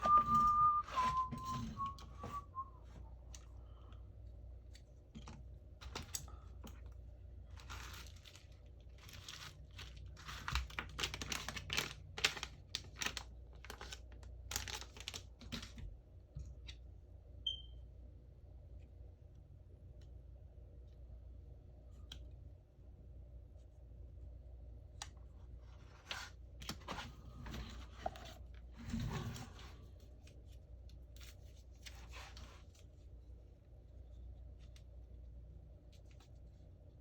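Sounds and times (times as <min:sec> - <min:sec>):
thin whistle-like tone: 0:00.0 - 0:02.9.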